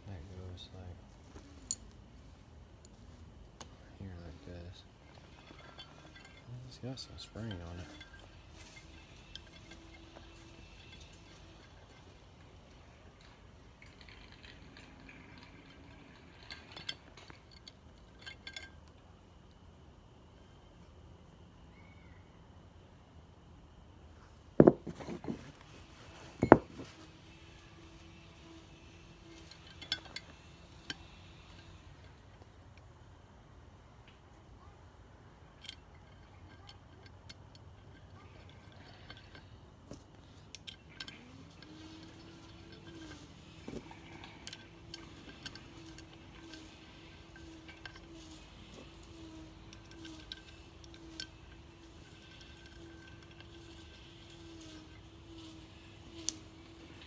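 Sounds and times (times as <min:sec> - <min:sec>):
small metal parts clinking: 0:01.2 - 0:02.0, 0:04.7 - 0:19.0, 0:24.6 - 0:27.0, 0:29.2 - 0:32.4, 0:35.5 - 0:57.0.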